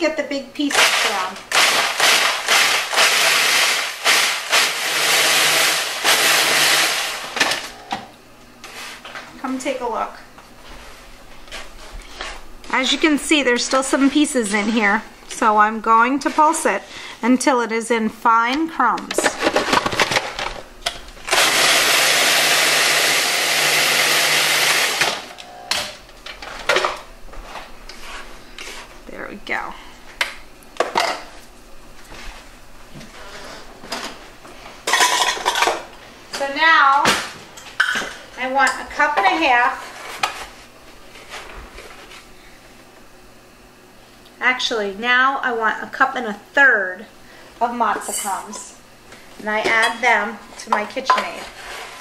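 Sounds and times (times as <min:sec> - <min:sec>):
food processor whirring and rattling: 0:00.6 - 0:07.8, 0:19.2 - 0:25.5.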